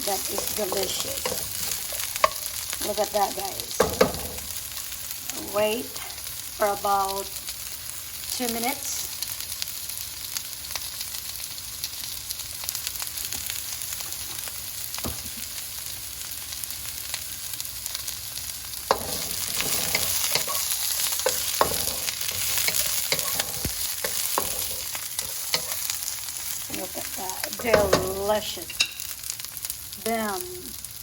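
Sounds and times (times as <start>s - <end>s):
utensil scraping a pan: 0.0s - 2.7s, 18.9s - 26.0s
vegetables sizzling in oil: 0.0s - 31.0s.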